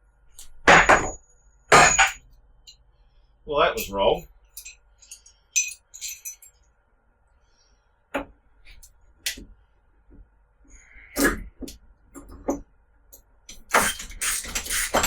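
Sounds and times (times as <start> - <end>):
hard objects knocking: 0.7 - 2.2
light clinks: 3.8 - 6.6.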